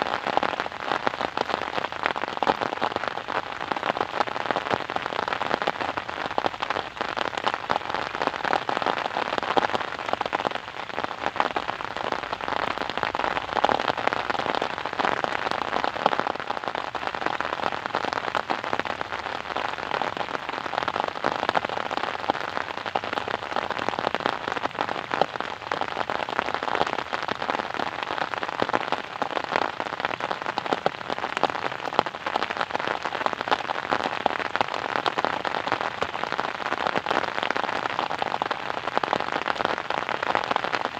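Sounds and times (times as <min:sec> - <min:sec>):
raindrops pattering on a surface: 0:00.0 - 0:40.9
steady rain falling: 0:00.0 - 0:40.9.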